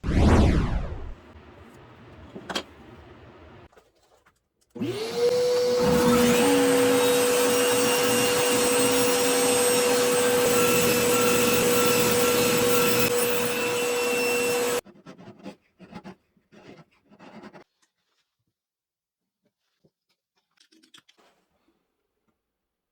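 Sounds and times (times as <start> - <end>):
electric motor appliance whining: 4.8 - 14.8.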